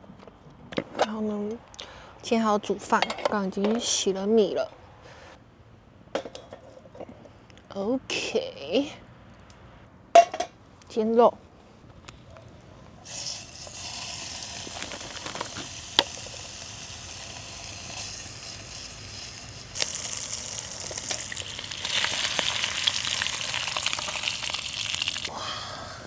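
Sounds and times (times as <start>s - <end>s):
meat sizzling in a pan: 13.1s - 25.3s.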